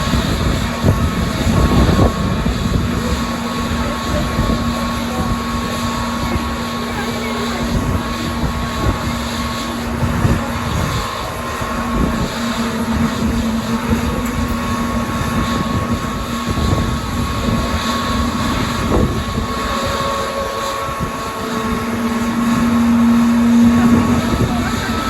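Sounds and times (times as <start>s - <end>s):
high engine whine: 0.0s - 25.0s
jet engines humming: 0.0s - 25.0s
rough rumble: 0.0s - 25.0s.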